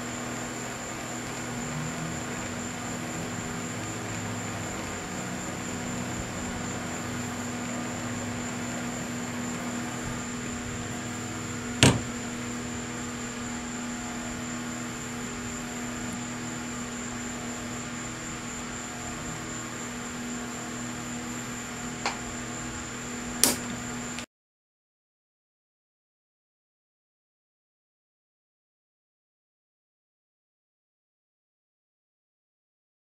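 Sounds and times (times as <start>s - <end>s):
workshop hum: 0.0s - 24.2s.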